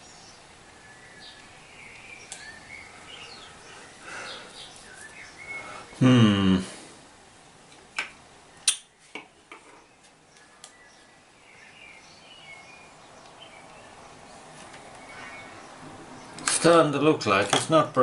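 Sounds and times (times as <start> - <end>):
faint birdsong: 0.0 - 18.0
person grunting: 6.0 - 6.8.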